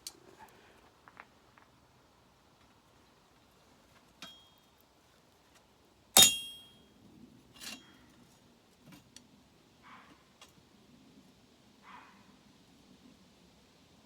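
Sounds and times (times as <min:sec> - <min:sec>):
metal knock with bright ring: 0:06.2 - 0:06.7
ringing metal clinks: 0:06.2 - 0:06.8.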